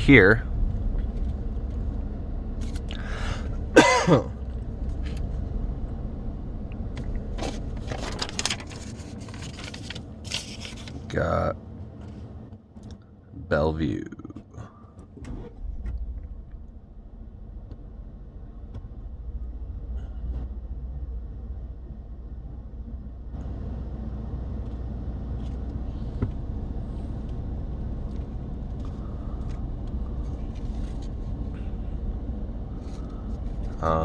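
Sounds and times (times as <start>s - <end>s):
engine and road rumble: 0.0s - 34.0s.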